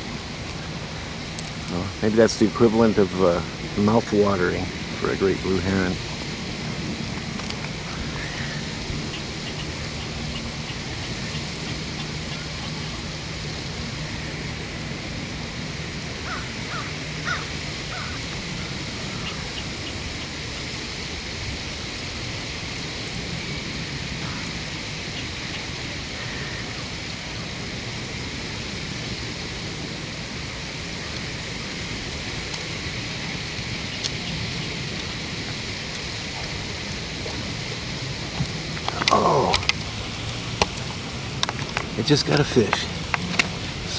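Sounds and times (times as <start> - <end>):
outdoor background noise: 0.0 - 43.9
bird calls: 1.4 - 14.6, 16.2 - 20.7, 32.4 - 43.9.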